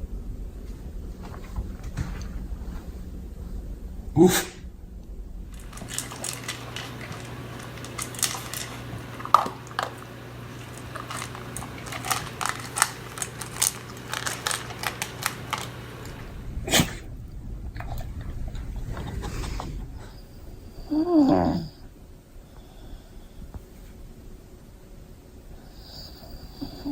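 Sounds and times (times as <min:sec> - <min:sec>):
dog chewing wet clicks: 0:05.5 - 0:16.4.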